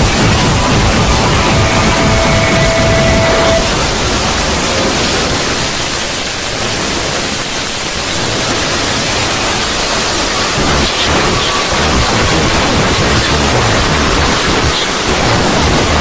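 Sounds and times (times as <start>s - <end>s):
loud static hiss: 0.0s - 16.0s
held tone: 0.8s - 3.6s.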